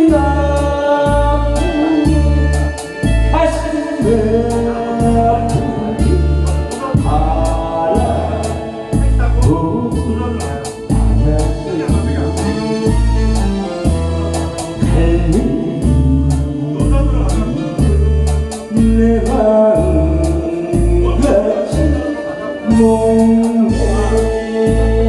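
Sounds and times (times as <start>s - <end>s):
person singing: 0.0s - 25.0s
pulsing bass beat: 0.0s - 25.0s.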